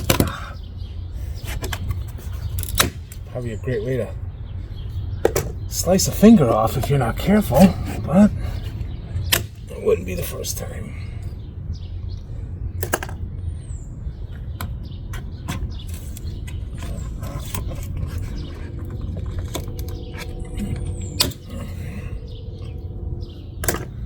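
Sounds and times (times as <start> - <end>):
low rumble: 16.5 - 24.0.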